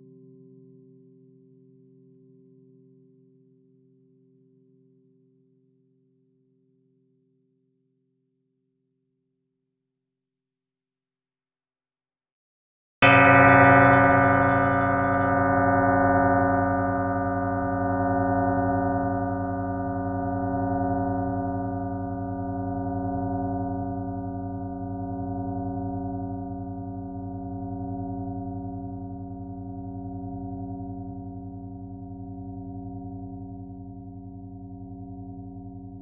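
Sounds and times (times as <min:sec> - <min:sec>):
bell ringing: 0:13.0 - 0:17.6.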